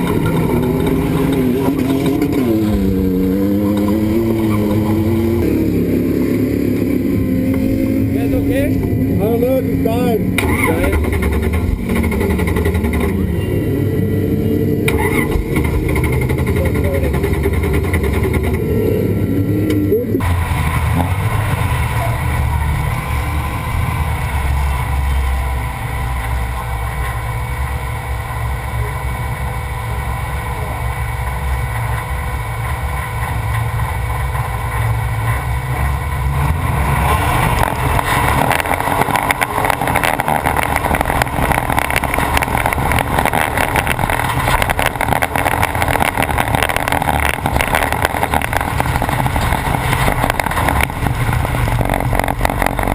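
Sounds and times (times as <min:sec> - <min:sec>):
dense rattling: 0:00.0 - 0:13.4, 0:14.9 - 0:18.7, 0:32.8 - 0:52.9
truck engine rumble: 0:00.0 - 0:52.9.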